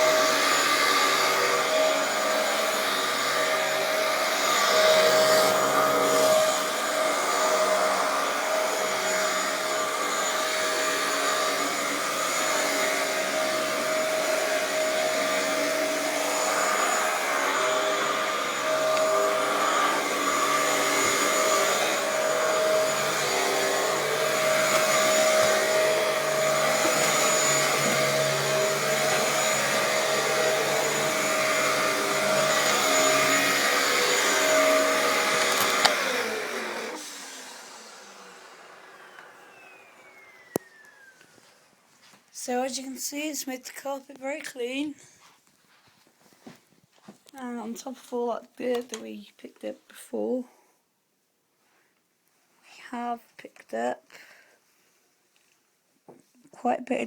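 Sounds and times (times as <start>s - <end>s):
vacuum cleaner on carpet: 0.0s - 43.3s.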